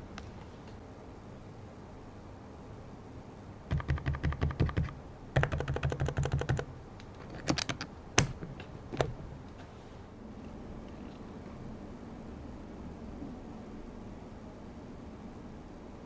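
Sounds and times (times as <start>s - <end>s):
mechanical keyboard typing: 3.7s - 9.2s.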